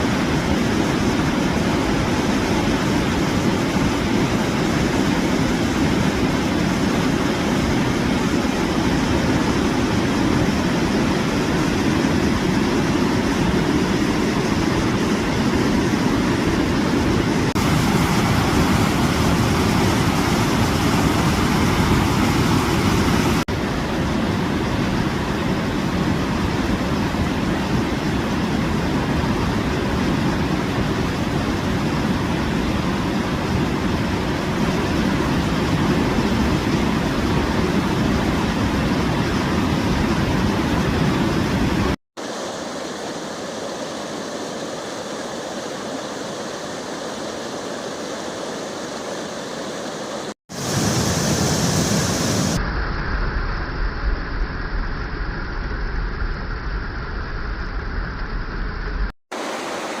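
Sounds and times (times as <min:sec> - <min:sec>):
falling water rushing: 0:13.4 - 0:52.6, 0:59.3 - 1:00.0.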